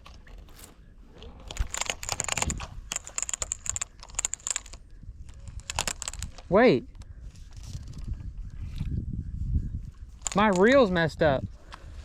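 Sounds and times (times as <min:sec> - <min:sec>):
fishing reel clicking: 0:01.6 - 0:06.4, 0:10.2 - 0:10.8.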